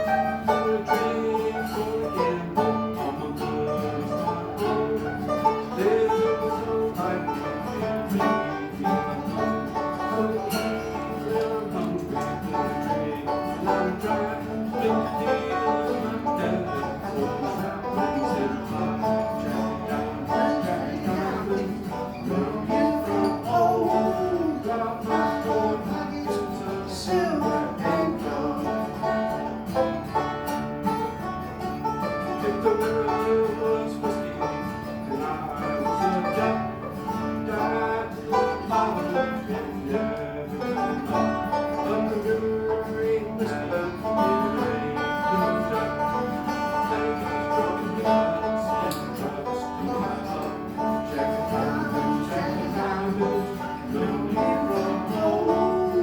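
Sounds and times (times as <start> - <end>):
banjo picking: 0.0 - 56.0
bluegrass band playing: 0.0 - 56.0
guitar picking: 0.0 - 56.0.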